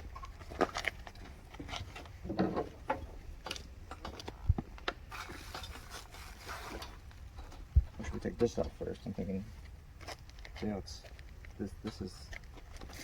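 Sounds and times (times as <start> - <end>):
packing rustling: 0.0 - 2.3, 4.1 - 7.6, 8.5 - 13.0
clicks and knocks of parts: 0.0 - 5.9.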